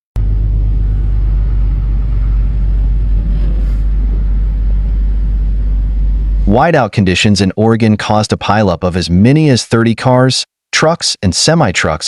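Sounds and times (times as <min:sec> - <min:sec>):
car engine and tyres rumbling: 0:00.2 - 0:06.6.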